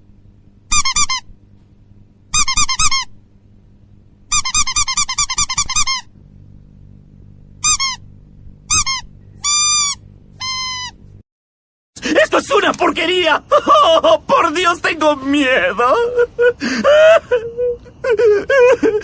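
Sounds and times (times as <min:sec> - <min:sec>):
faint low hum: 0:00.0 - 0:11.2, 0:12.0 - 0:19.0
high-pitched squeaking: 0:00.7 - 0:01.2, 0:02.4 - 0:03.1, 0:04.3 - 0:06.1, 0:07.6 - 0:08.0, 0:08.7 - 0:11.0.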